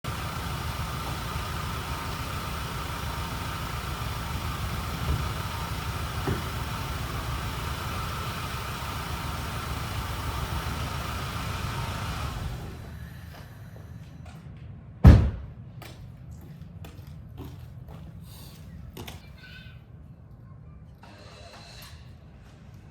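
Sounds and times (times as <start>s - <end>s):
car engine idling: 0.0s - 13.8s.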